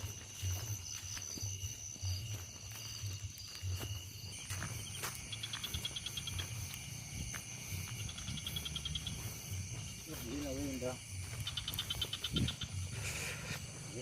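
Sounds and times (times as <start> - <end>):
insects trilling: 0.0 - 14.0
rapid insect chirps: 0.0 - 14.0.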